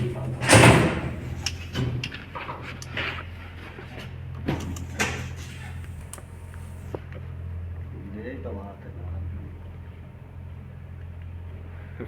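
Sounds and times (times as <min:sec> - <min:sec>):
clicks and light knocks: 0:00.0 - 0:03.2, 0:04.4 - 0:07.2
steady low hum: 0:00.0 - 0:12.0.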